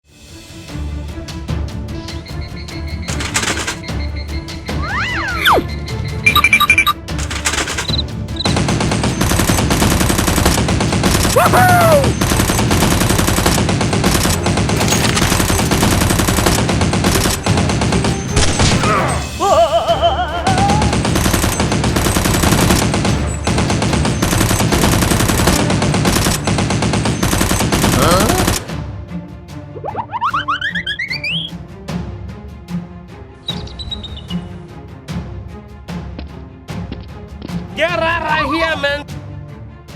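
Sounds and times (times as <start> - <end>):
music: 0.0 - 39.9
rapid machine-gun fire: 3.1 - 3.9, 6.4 - 18.9, 20.5 - 28.7.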